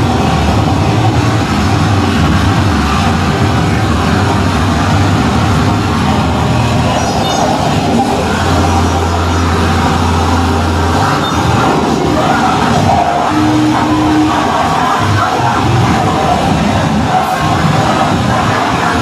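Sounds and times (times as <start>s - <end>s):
harsh noise music through pa: 0.0s - 19.0s
low steady drone: 0.0s - 19.0s
held higher tone: 6.4s - 15.8s.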